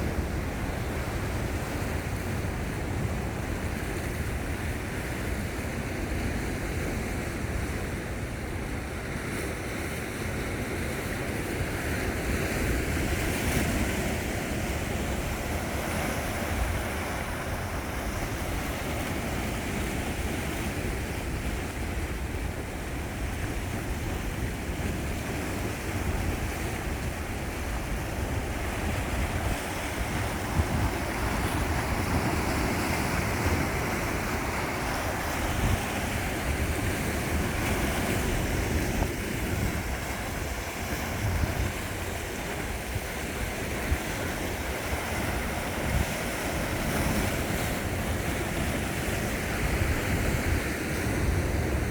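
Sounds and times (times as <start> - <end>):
sea waves washing on shore: 0.0 - 51.9
wind rumbling on microphone: 10.6 - 51.9.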